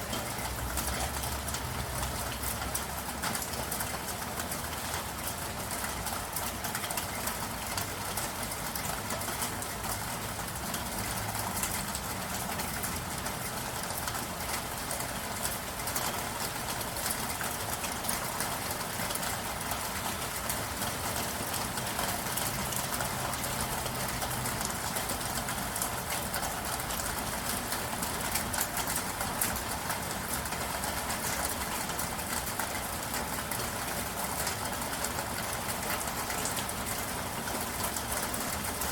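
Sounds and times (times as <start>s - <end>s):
rain pattering: 0.0s - 38.9s.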